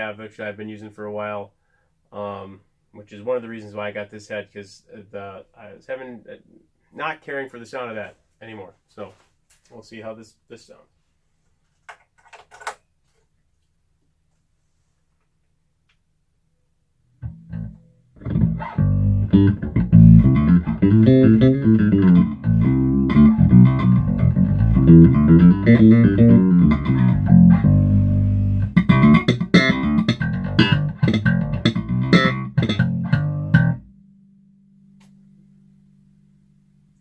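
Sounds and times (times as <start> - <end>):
electric bass playing: 17.2 - 37.0
low amp hum: 17.2 - 37.0.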